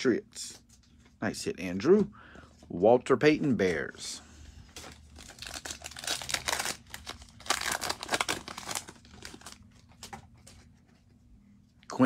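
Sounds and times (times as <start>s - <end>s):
plastic wrapper crinkling and tearing: 4.7s - 10.6s.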